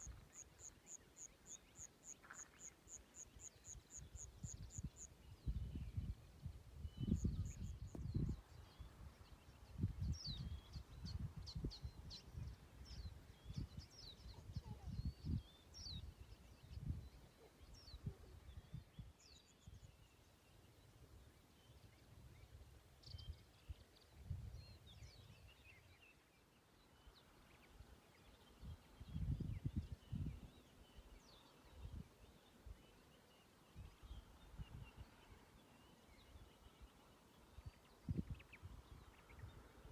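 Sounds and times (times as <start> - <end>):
small birds chirping: 0.0 - 39.9
wind gusts on microphone: 4.0 - 20.0, 22.2 - 25.6, 28.6 - 30.6, 37.6 - 39.9.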